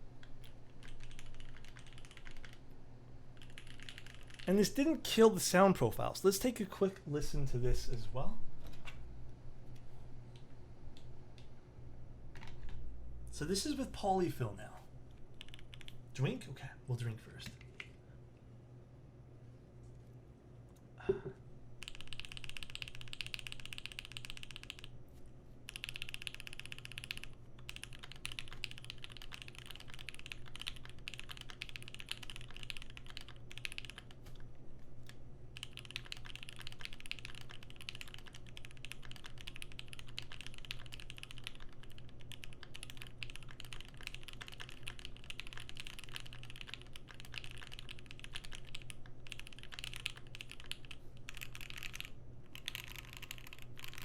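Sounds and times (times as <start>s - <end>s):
fast typing on mechanical keyboard: 0.2s - 2.7s, 3.4s - 4.7s, 15.3s - 16.0s, 21.8s - 25.0s, 25.6s - 54.0s.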